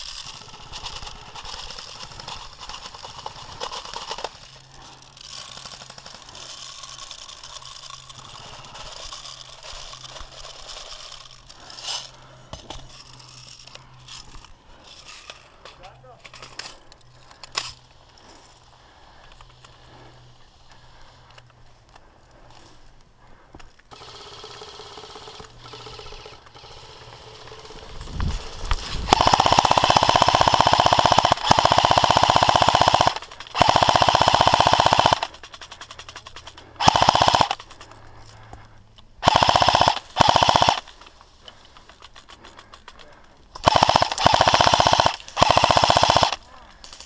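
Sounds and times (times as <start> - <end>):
airsoft gun full-auto bursts: 0.0 - 12.3, 23.9 - 37.9, 39.2 - 47.0.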